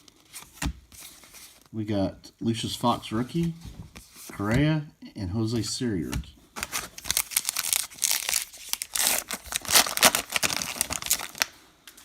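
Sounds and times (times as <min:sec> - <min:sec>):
wrapper crinkling: 0:06.6 - 0:11.6.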